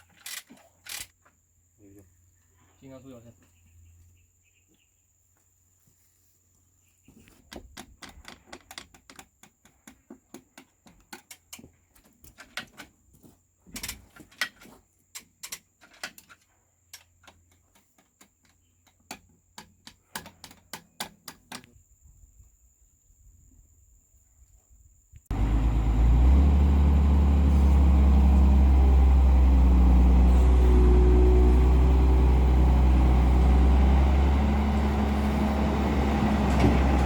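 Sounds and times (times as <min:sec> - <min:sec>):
hand tools clicking and tapping: 0:07.5 - 0:12.9, 0:13.7 - 0:21.7.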